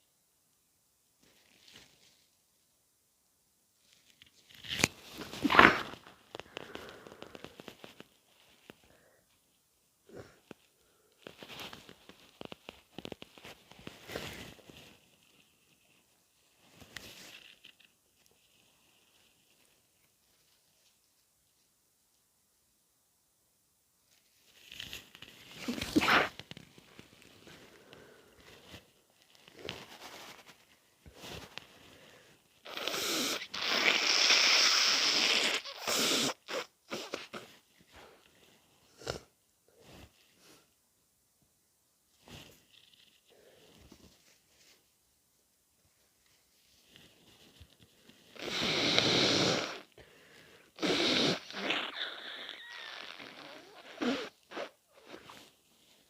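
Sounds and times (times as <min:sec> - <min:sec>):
person blowing nose wetly: 0:05.2 - 0:06.1, 0:25.6 - 0:26.4, 0:32.6 - 0:37.6, 0:48.3 - 0:50.0, 0:50.8 - 0:55.5
person sniffing: 0:05.2 - 0:08.0, 0:25.6 - 0:26.4, 0:31.2 - 0:38.2, 0:38.8 - 0:40.7, 0:48.3 - 0:55.5.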